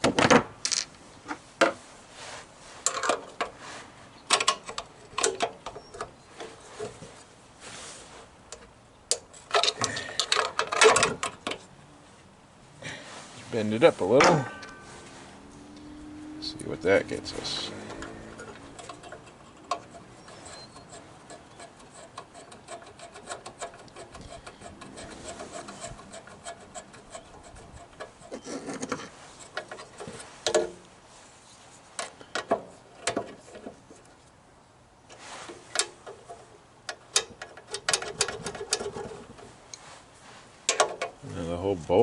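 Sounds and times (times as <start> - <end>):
parts rubbing and scraping: 0.6 - 8.7, 13.2 - 34.3, 35.1 - 41.2
sharp clicks and knocks: 17.7 - 30.8, 35.7 - 39.5, 40.7 - 41.2.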